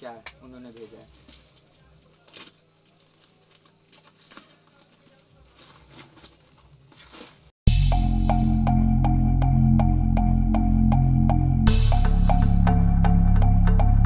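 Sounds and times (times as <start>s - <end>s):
parcel rustling and handling: 0.0s - 7.6s
loud background music: 7.7s - 14.0s.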